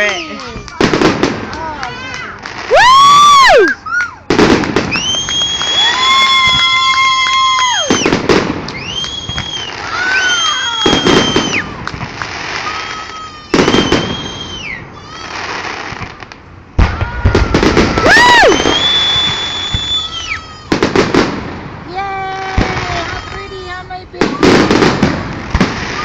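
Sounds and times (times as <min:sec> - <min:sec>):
firework bangs and crackling: 0:00.0 - 0:26.0
whistling firework shells: 0:02.8 - 0:21.4.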